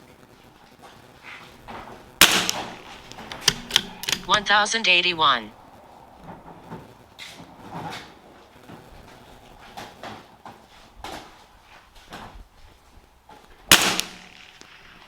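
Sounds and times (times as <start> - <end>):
rifle shot: 2.2 - 4.6, 13.7 - 15.0.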